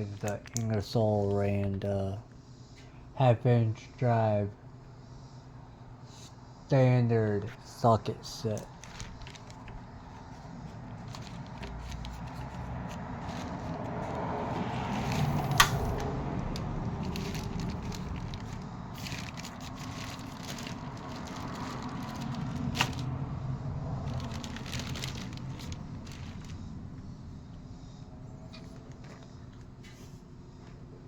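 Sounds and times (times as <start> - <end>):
steady low hum: 0.0 - 31.0
socket set rustling and clicking: 8.4 - 23.1.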